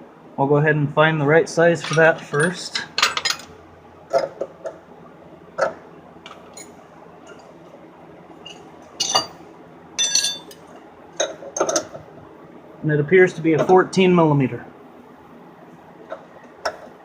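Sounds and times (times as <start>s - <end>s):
steel sockets clinking: 1.8s - 3.5s, 8.5s - 9.3s, 10.0s - 10.6s.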